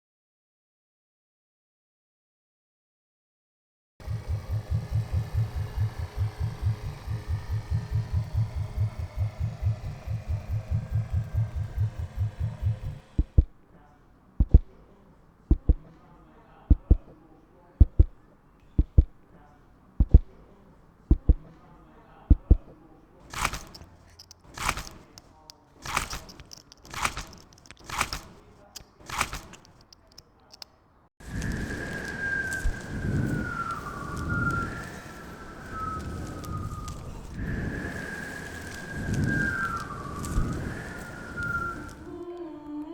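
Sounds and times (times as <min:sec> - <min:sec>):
fast low thumping: 0:04.0 - 0:13.6, 0:14.4 - 0:14.7, 0:15.5 - 0:15.9, 0:16.7 - 0:17.1, 0:17.8 - 0:18.2, 0:18.8 - 0:19.2, 0:20.0 - 0:20.3, 0:21.1 - 0:21.5, 0:22.3 - 0:22.7.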